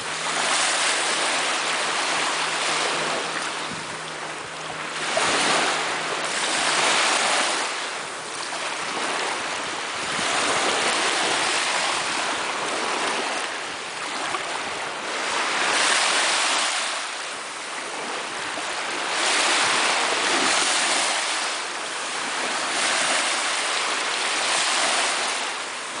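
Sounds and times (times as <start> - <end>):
sea waves breaking on shore: 0.0 - 26.0.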